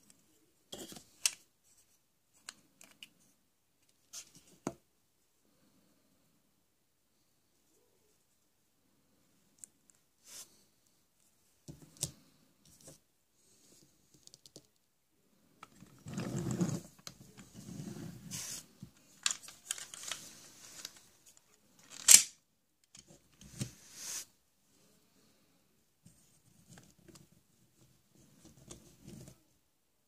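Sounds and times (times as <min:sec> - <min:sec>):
rustling: 0:15.7 - 0:22.3.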